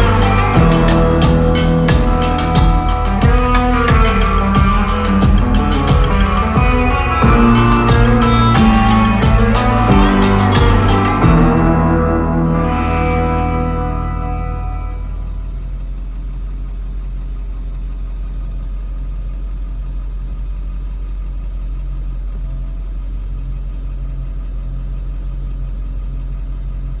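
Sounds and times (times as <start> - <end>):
guitar music: 0.0 - 15.7
engine idling: 0.0 - 27.0.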